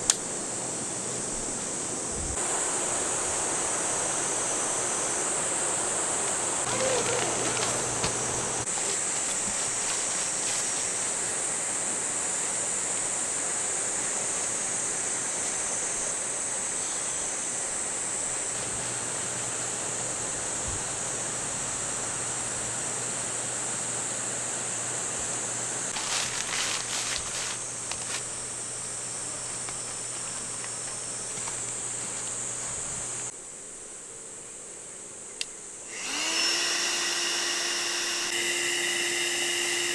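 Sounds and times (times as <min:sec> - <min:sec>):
high-pitched insect chorus: 0:00.3 - 0:22.9.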